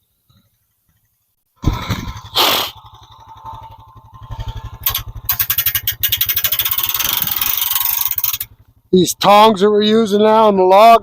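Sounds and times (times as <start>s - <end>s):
small engine running and revving: 1.6s - 9.2s.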